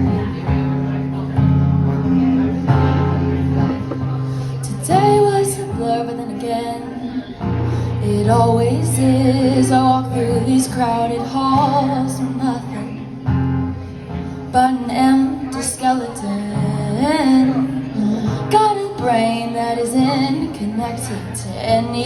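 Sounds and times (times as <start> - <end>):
woman singing a slow song: 0.0 - 1.0, 4.4 - 13.4, 14.4 - 22.0
acoustic guitar: 0.0 - 22.0.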